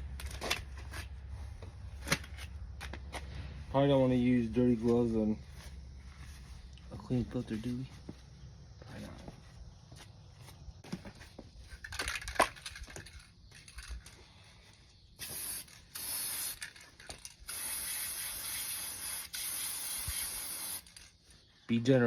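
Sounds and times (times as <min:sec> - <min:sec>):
rustling and clicking handling: 0:10.8 - 0:14.8
aerosol spray hissing: 0:15.2 - 0:16.8, 0:17.4 - 0:21.0.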